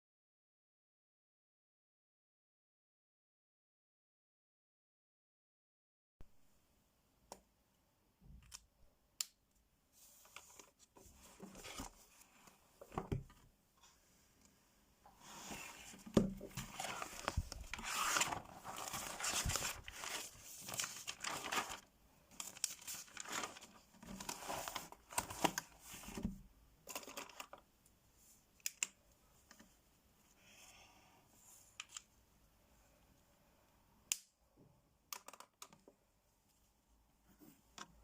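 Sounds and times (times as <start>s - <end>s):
crinkling and rustling wrapper: 16.4s - 26.2s, 26.8s - 27.7s.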